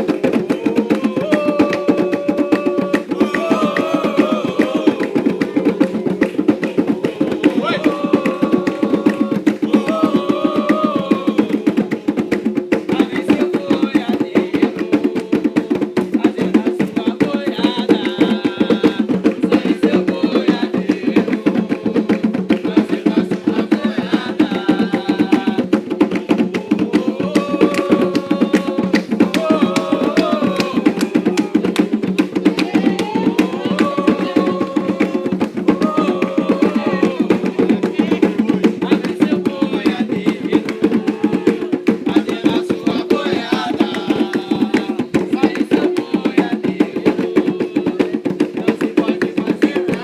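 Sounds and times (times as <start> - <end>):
hand drums playing fast rhythm: 0.0 - 50.0
voices singing: 0.0 - 50.0.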